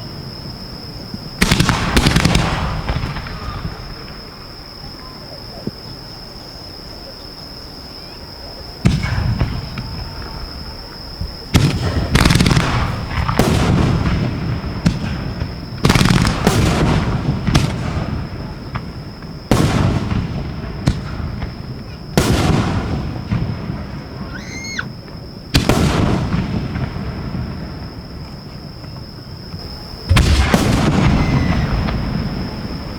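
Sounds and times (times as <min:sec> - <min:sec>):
fireworks booming: 0:00.0 - 0:06.6, 0:08.2 - 0:32.9
rising firework whistle: 0:24.0 - 0:25.1, 0:30.3 - 0:32.9.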